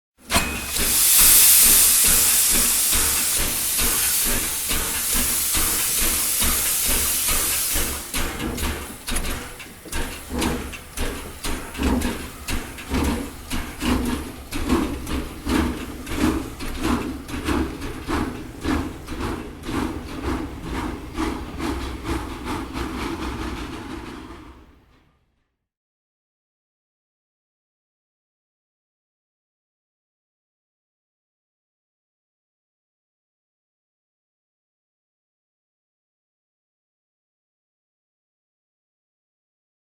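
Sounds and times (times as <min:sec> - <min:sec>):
steam locomotive exhaust chuffs: 0:00.2 - 0:24.9
steam venting hiss: 0:00.3 - 0:21.4.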